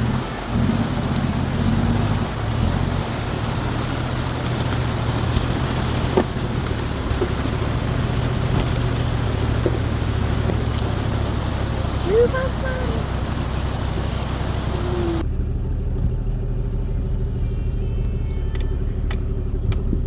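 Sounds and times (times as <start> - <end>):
diesel engine running: 0.0 - 20.0
rolling road noise: 0.0 - 20.0.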